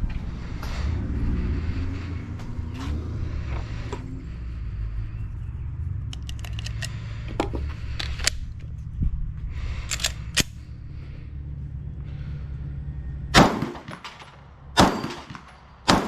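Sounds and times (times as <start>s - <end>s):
steady low hum: 0.0s - 16.0s
pistol handling clicks: 6.1s - 7.0s, 8.0s - 8.7s, 9.8s - 10.6s.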